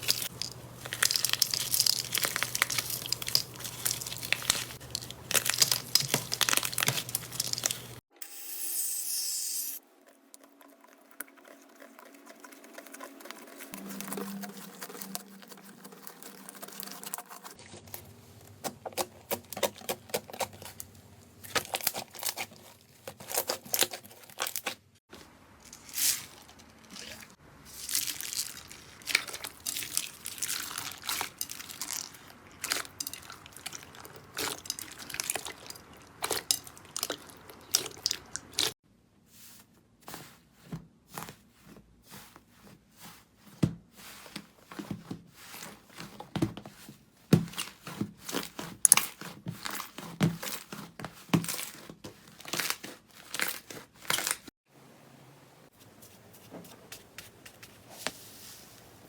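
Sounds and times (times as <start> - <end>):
slime crackling and popping: 0.0 - 8.0.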